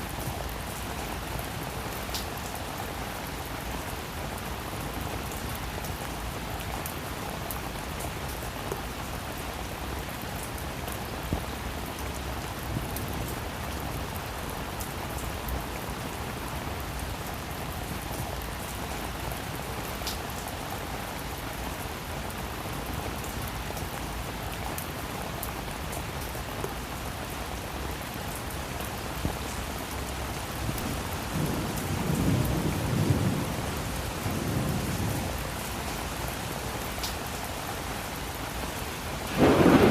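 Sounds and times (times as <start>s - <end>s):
steady rain falling: 0.0s - 39.9s
thunder rumble: 39.3s - 39.9s.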